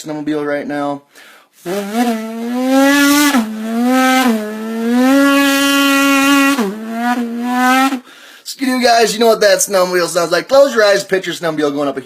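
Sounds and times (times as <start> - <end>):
man imitating engine into can: 1.6 - 8.0.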